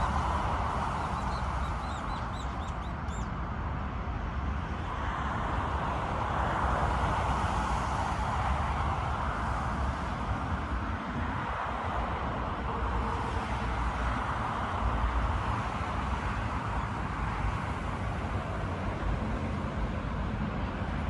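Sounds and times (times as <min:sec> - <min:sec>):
bird chirping: 0:01.0 - 0:03.3.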